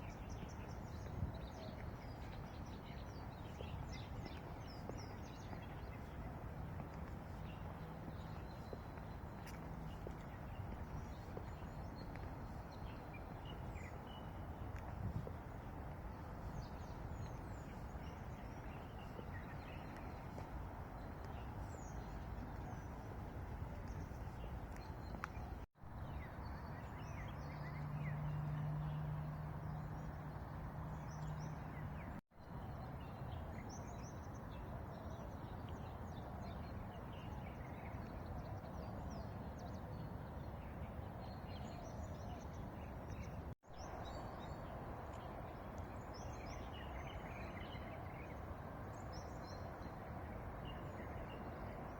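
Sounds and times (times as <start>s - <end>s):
small birds chirping: 0.0s - 32.2s.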